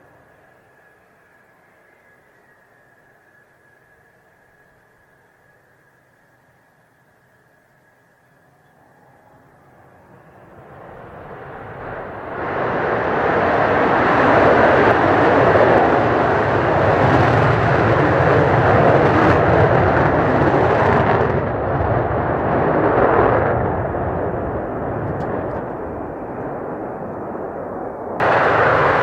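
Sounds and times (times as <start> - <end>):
jet engines roaring: 8.8 - 29.0.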